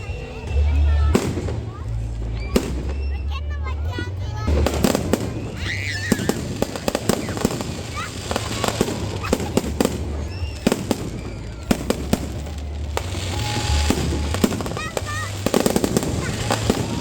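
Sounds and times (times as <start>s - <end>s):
firework whistles: 0.0s - 3.7s, 4.4s - 17.0s
fireworks popping and cracking: 0.0s - 17.0s.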